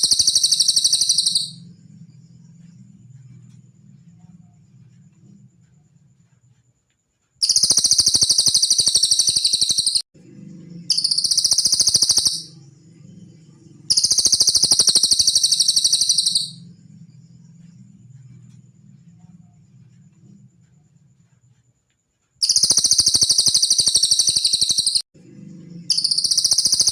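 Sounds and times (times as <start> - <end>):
bird high-pitched trills: 0.0 - 1.6, 7.4 - 10.0, 10.8 - 12.6, 13.9 - 16.7, 22.4 - 25.0, 25.9 - 26.9
faint low hum: 0.0 - 7.4, 10.2 - 22.4, 25.2 - 26.9.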